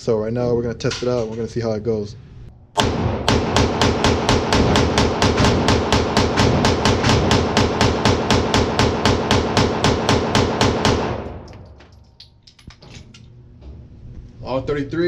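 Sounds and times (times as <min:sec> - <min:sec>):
pistol rapid shots: 0:02.8 - 0:11.8.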